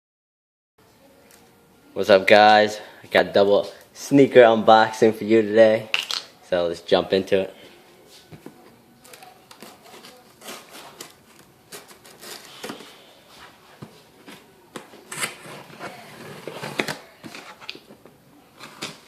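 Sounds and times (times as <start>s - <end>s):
cardboard package rustling and clicking: 8.5s - 13.0s.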